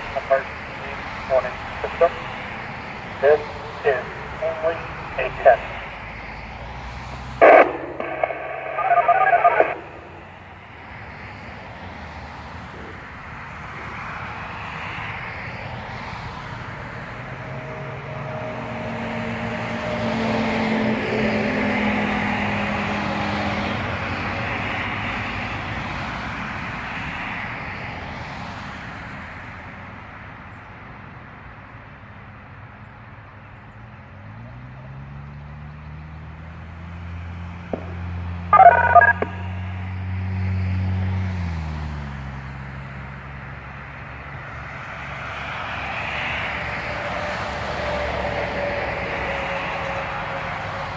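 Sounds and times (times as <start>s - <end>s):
recorded voice over loudspeakers: 0.0s - 2.4s, 3.1s - 5.9s, 7.4s - 10.3s, 38.5s - 39.6s
background noise rush: 0.0s - 16.9s, 37.6s - 39.8s
siren winding up: 38.5s - 39.7s.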